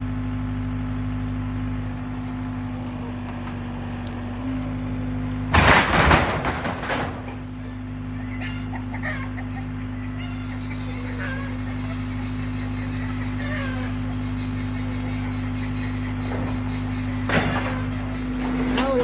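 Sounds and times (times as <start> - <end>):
loader engine running: 0.0 - 19.0
loud crash of shed falling: 5.4 - 7.6.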